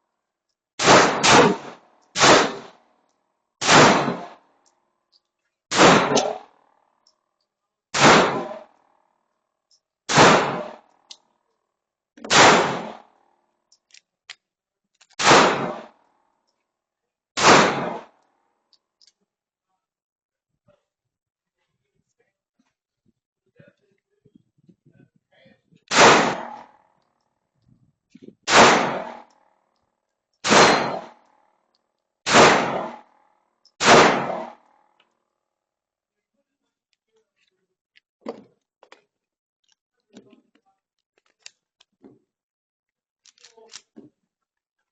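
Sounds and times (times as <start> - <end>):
airsoft gun shots: 0.8 - 2.7, 3.6 - 4.4, 5.7 - 6.4, 8.0 - 8.6, 10.1 - 10.8, 12.2 - 13.0, 15.2 - 15.9, 17.4 - 18.1, 25.9 - 26.7, 28.5 - 29.3, 30.4 - 31.2, 32.3 - 33.1, 33.8 - 34.6
metallic clangs of steel targets: 5.7 - 6.5, 30.4 - 31.3, 33.8 - 34.8.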